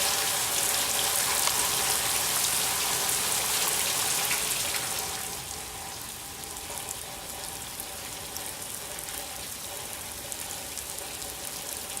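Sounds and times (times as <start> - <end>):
steady rain falling: 0.0 - 12.0.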